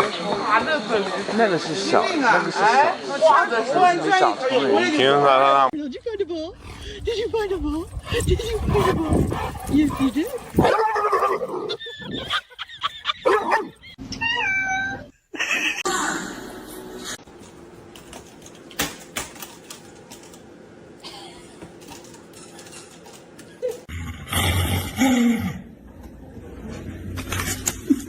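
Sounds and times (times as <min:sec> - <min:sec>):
pet noises: 0:06.5 - 0:12.6.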